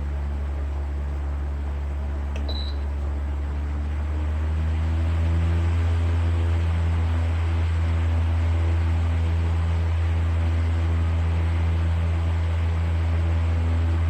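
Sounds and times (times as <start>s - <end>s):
fan running: 0.0s - 14.0s
short high beep: 2.5s - 2.8s.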